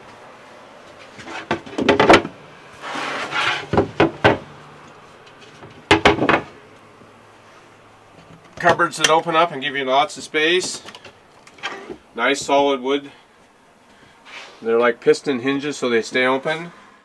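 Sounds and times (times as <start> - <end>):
wooden cupboard doors knocking: 3.7 - 4.5, 5.9 - 6.5.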